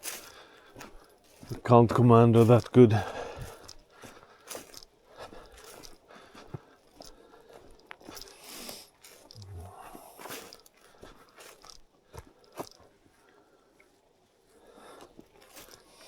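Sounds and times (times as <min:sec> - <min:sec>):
footsteps crunching on wet path: 0:00.0 - 0:13.0, 0:14.5 - 0:16.0.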